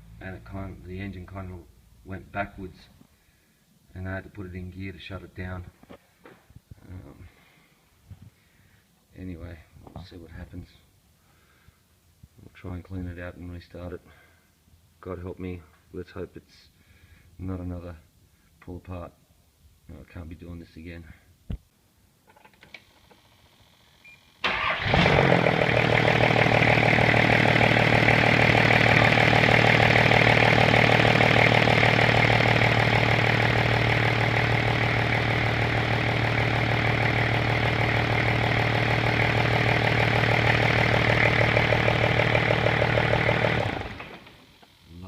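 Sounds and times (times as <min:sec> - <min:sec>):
diesel engine running: 0:24.8 - 0:44.2.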